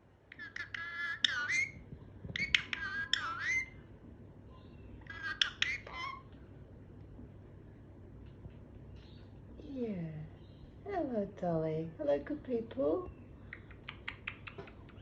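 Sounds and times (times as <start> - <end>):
parrot squawking: 0.3 - 1.8, 2.4 - 3.8, 4.6 - 6.3.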